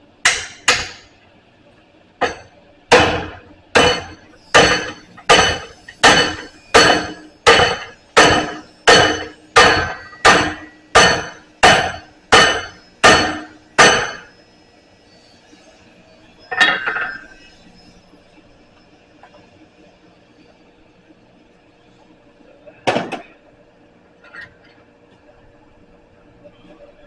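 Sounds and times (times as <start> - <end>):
hammer striking metal bar: 0.3 - 1.1, 2.2 - 14.3
metal clank: 2.2 - 14.3, 16.5 - 17.4.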